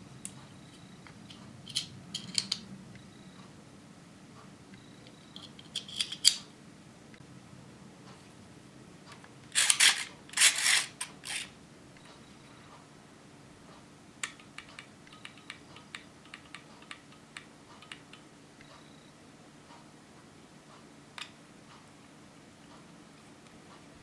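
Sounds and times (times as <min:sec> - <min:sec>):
plastic parts sliding: 0:01.3 - 0:02.6, 0:05.4 - 0:06.4, 0:09.5 - 0:11.5.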